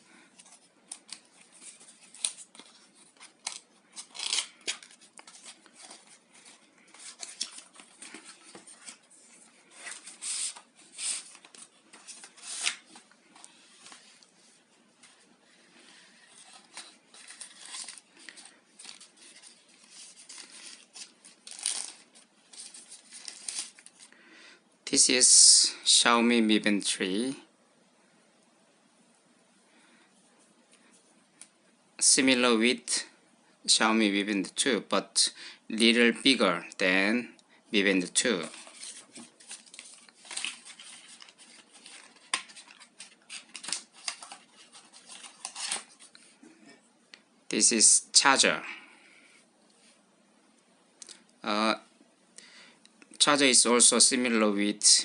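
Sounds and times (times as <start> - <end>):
plastic and cardboard crinkling: 0.3 - 14.3, 16.0 - 24.1, 38.3 - 46.4
plastic packaging rustling: 0.4 - 14.3, 15.7 - 24.1, 38.2 - 46.4.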